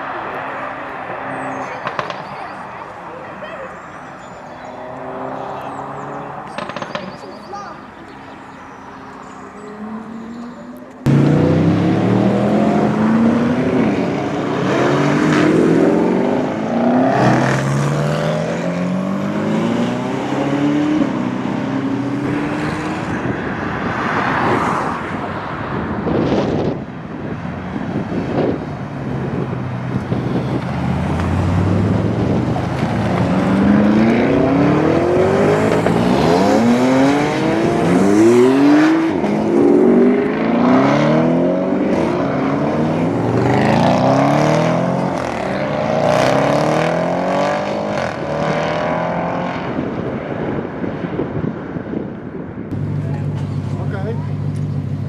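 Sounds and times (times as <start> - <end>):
car engine accelerating hard: 9.7 - 25.2, 29.3 - 50.1.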